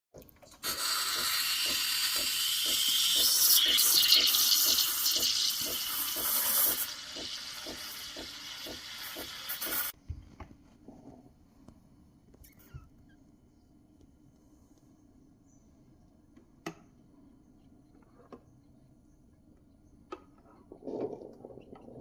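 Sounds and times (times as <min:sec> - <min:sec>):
coffee machine pulsing: 0:00.6 - 0:09.9
coffee machine hissing: 0:00.6 - 0:10.0.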